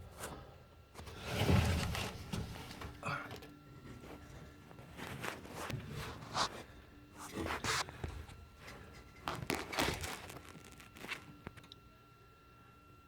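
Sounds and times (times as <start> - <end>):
hands and tools scraping and knocking: 1.0 - 11.3.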